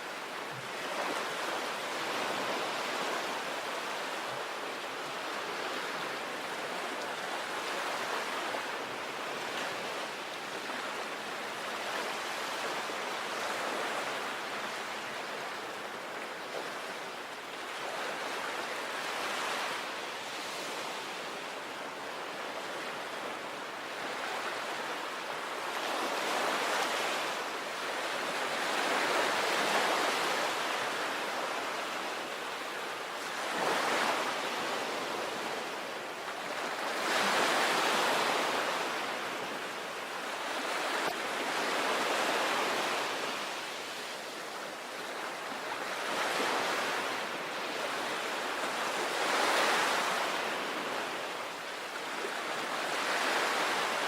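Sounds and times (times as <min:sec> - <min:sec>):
sea waves breaking on shore: 0:00.0 - 0:54.0.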